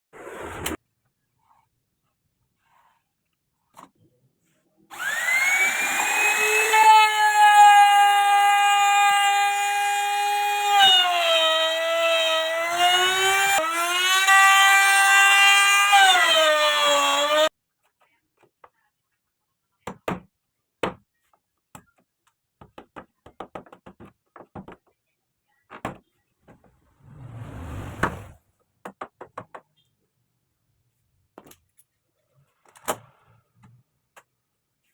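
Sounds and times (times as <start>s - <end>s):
router motor winding down: 4.9s - 17.5s.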